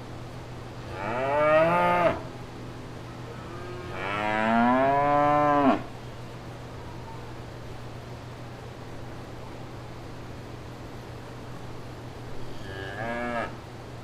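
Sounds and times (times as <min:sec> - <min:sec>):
cow mooing: 0:00.9 - 0:02.3, 0:03.4 - 0:05.9, 0:12.5 - 0:13.6.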